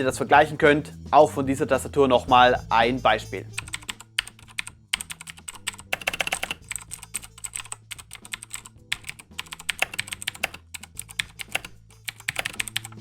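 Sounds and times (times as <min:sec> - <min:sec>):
typing on keyboard: 0:03.6 - 0:13.0.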